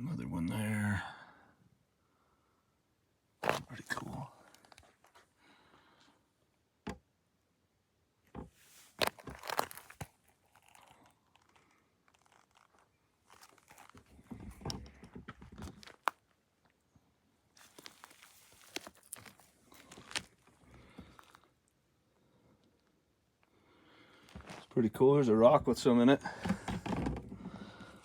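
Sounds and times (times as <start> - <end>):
gravel crunching: 3.4 - 5.3, 8.6 - 16.4, 17.5 - 21.6, 23.9 - 28.0.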